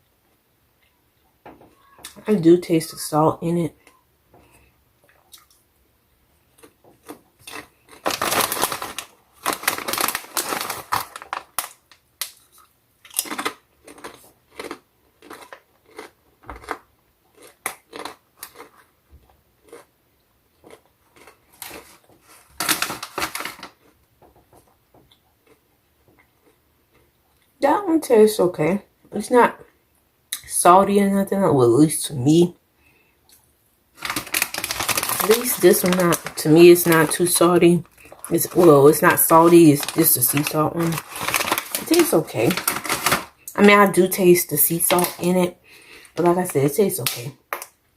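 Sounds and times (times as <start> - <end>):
crunching and chewing chips: 6.4 - 27.6, 34.0 - 44.0.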